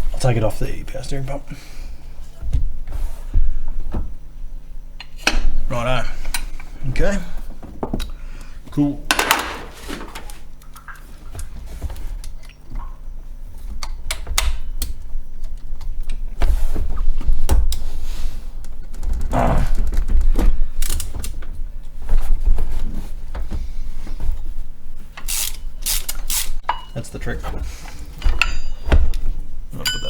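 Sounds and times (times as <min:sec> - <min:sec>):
metal tools clicking and clunking: 0:25.1 - 0:27.1, 0:27.9 - 0:30.0.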